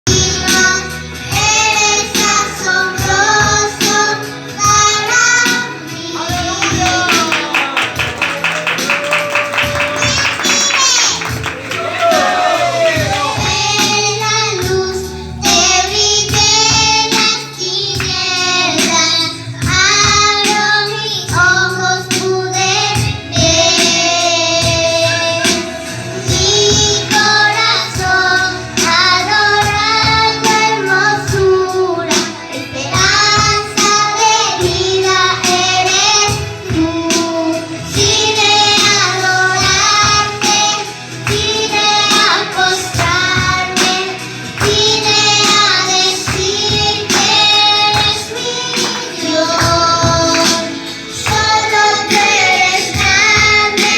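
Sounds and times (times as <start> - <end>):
instrumental backing music: 0.0 - 53.9
girl singing: 0.1 - 7.2, 26.4 - 53.9.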